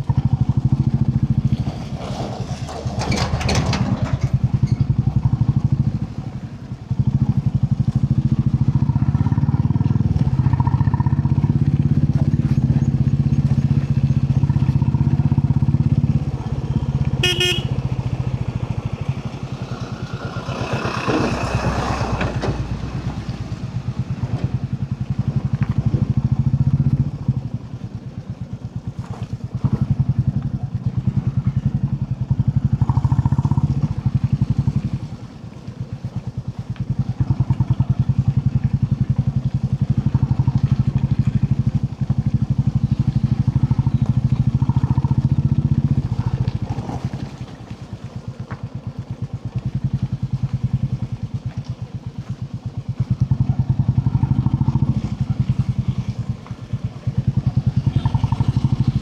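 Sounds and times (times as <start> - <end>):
motorcycle engine running: 0.0 - 59.0
horn toot: 17.2 - 17.9.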